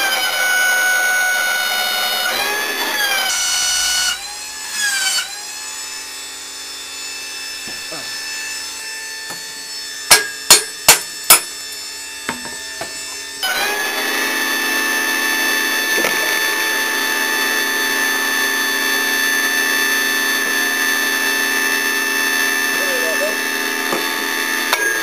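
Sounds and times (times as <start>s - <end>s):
hydraulic pump motor whining: 0.0s - 25.0s
sharp knocks: 10.1s - 11.5s.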